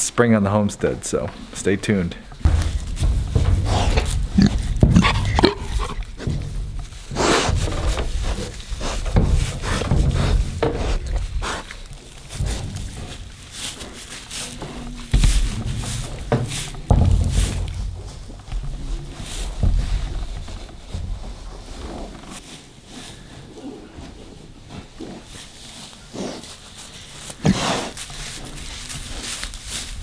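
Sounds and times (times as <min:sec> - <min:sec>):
pig grunting: 0:02.6 - 0:15.1, 0:27.3 - 0:28.3.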